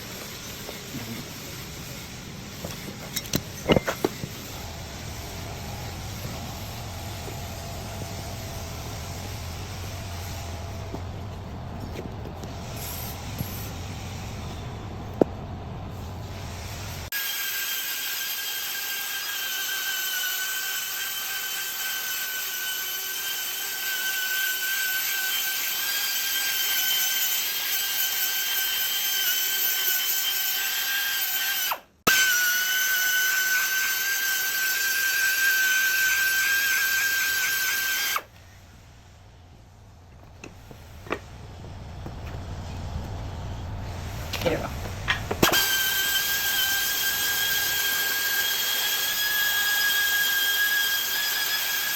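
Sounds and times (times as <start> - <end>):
machine tool cutting steel: 45.4 - 51.9.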